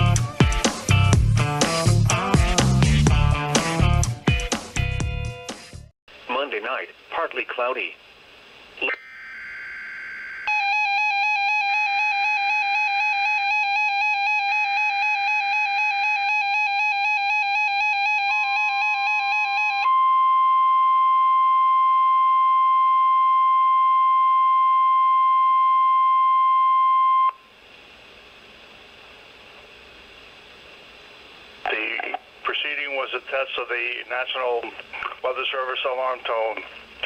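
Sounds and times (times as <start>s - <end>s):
steady warning alarm tone: 9.0s - 27.5s.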